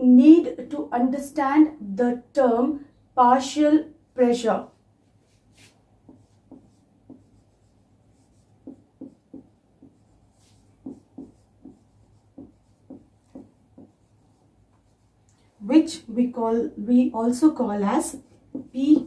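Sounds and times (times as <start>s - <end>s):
pen strokes on paper: 5.0s - 15.2s.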